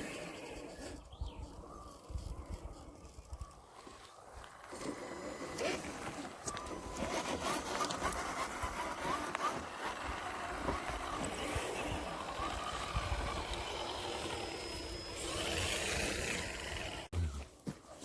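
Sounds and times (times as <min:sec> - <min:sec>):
electric motor whining: 0:04.6 - 0:17.5.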